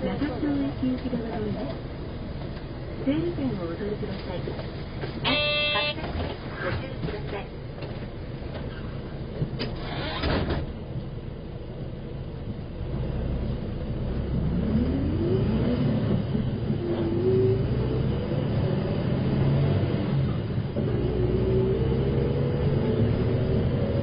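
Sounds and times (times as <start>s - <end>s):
bus engine accelerating: 0.0s - 24.0s.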